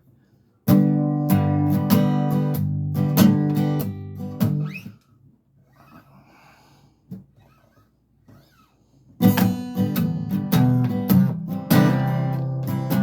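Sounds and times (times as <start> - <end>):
acoustic guitar strumming: 0.7 - 4.9, 9.2 - 13.0.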